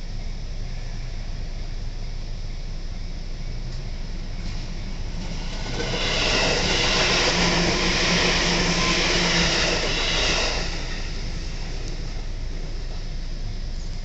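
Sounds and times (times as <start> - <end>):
train passing with wheel noise: 0.0 - 14.0.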